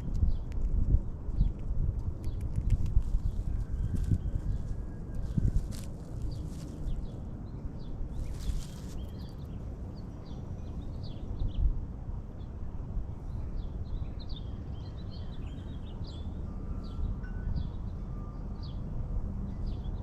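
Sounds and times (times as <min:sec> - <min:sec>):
small birds chirping: 0:02.2 - 0:11.2
brief rustle: 0:05.2 - 0:06.8, 0:08.2 - 0:09.2.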